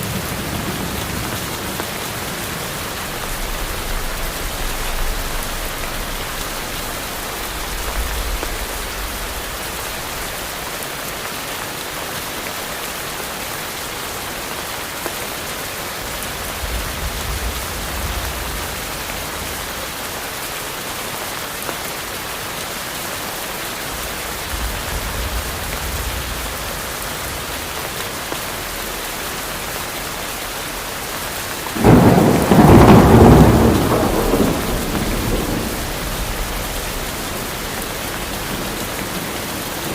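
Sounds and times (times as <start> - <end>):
distant thunder rumbles: 0.0 - 10.5, 23.9 - 28.0, 31.8 - 39.9
steady rain falling: 0.0 - 39.9
loud thunder clap: 31.8 - 39.5.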